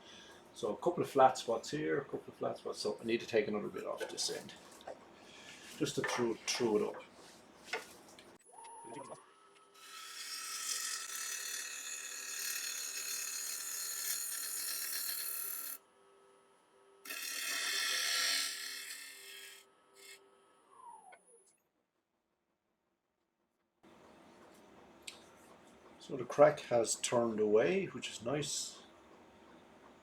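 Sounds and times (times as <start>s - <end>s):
wood lathe spinning: 9.7s - 15.8s, 17.1s - 20.2s
gouge cutting spinning wood: 9.8s - 15.8s, 17.1s - 20.2s.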